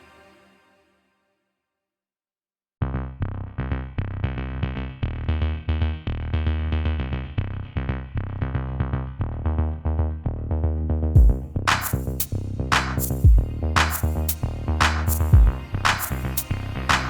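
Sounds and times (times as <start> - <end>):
electronic music with heavy bass: 11.2 - 17.0.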